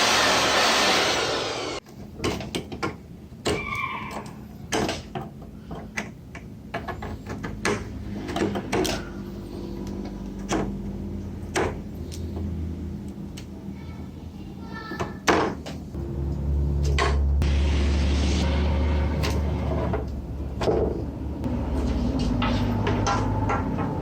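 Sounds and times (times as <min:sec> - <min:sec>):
power duster blowing air: 0:00.0 - 0:01.8, 0:17.4 - 0:19.6
hardware clicks and knocks: 0:01.8 - 0:03.6.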